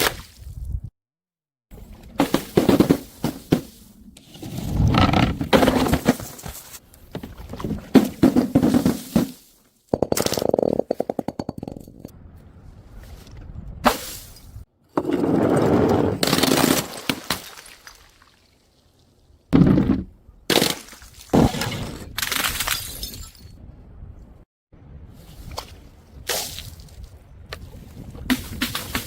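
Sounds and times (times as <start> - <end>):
objects crunching and scraping: 1.9 - 11.3.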